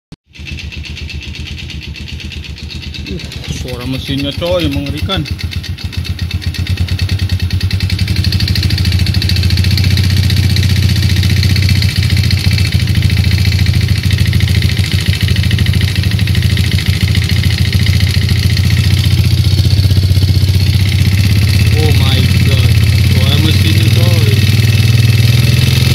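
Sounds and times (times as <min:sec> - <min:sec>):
motorcycle engine knocking: 0:00.3 - 0:25.9.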